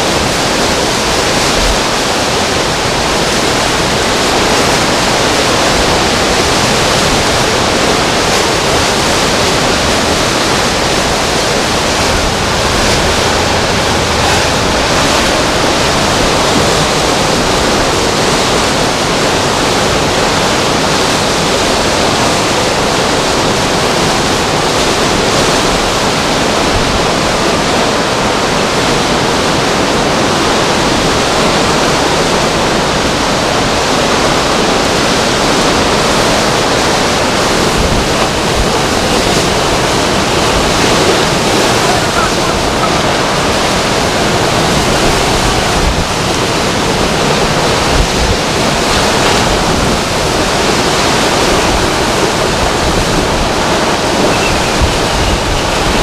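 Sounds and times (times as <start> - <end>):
strong wind rushing: 0.0 - 56.0.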